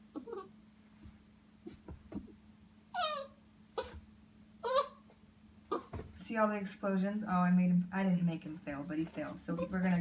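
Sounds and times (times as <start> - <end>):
puppy whimpering: 0.0 - 0.6, 1.6 - 4.0, 4.6 - 5.1, 5.7 - 6.0.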